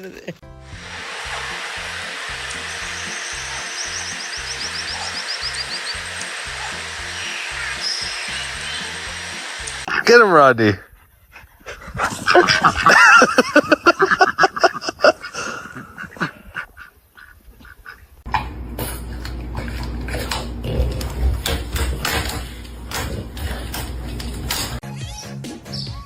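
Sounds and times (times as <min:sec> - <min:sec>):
wavering animal cries: 0:02.4 - 0:09.6.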